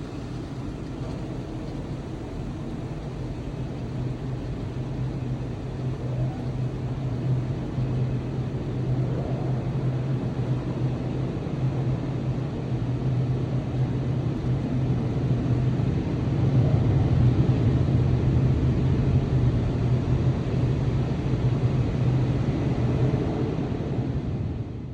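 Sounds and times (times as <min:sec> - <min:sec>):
car wash machinery humming: 0:00.0 - 0:16.0
constant rushing noise: 0:00.0 - 0:24.8.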